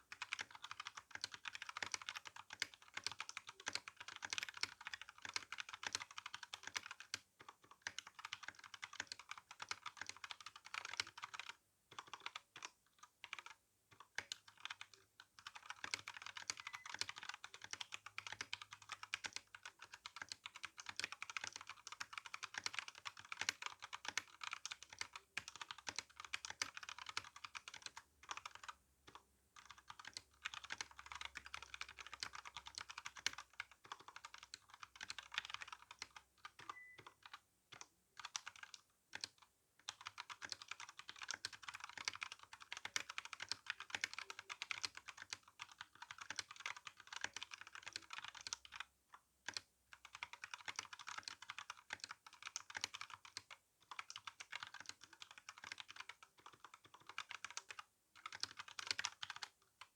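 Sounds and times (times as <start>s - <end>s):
mechanical keyboard typing: 0.0s - 59.9s.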